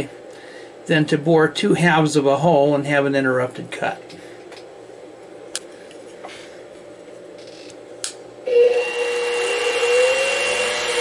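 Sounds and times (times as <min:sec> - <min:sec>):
mill motor and spindle whine: 0:08.4 - 0:11.0.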